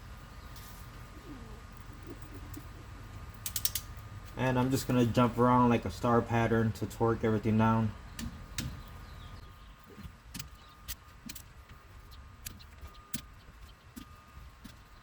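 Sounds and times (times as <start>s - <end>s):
torque wrench clicks: 3.4s - 3.9s.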